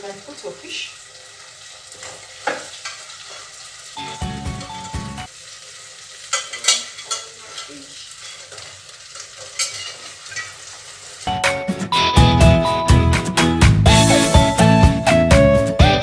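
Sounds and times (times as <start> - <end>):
fish sizzling in a pan: 0.0 - 11.8
spoon stirring: 6.3 - 10.6.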